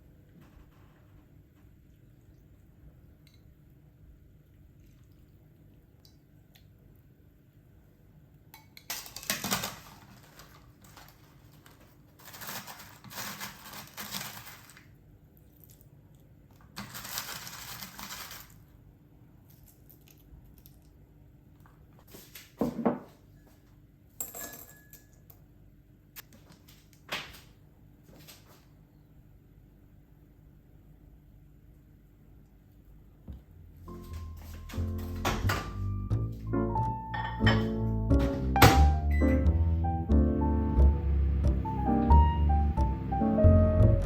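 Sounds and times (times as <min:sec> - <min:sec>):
kitchen handling noise: 0:08.6 - 0:14.8, 0:34.0 - 0:35.9, 0:37.1 - 0:39.0
kitchenware knocking: 0:37.1 - 0:39.0.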